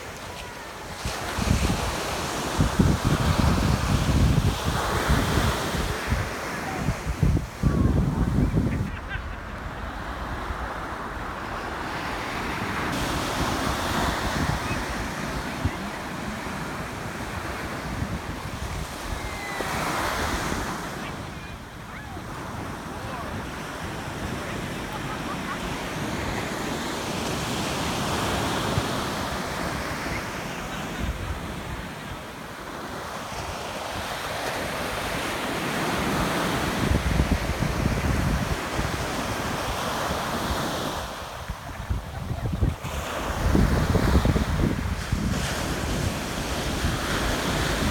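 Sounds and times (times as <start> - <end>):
ocean surf washing in: 0.0 - 47.9
wind buffeting microphone: 0.9 - 10.8, 36.8 - 39.5, 41.3 - 47.9.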